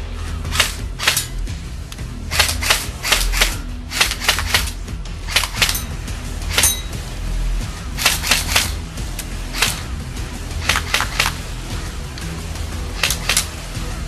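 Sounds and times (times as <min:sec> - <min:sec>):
background music: 0:00.0 - 0:14.0
airsoft rifle shots: 0:02.3 - 0:05.8, 0:10.6 - 0:11.4, 0:13.0 - 0:13.5.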